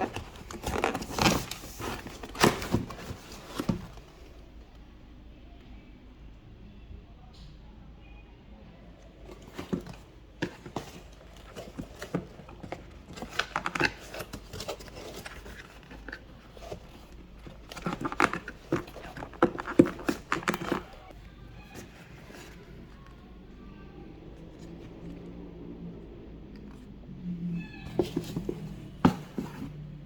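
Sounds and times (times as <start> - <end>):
packaging rustling: 0.0 - 4.3, 9.3 - 23.3
packaging clicks and taps: 9.3 - 23.2.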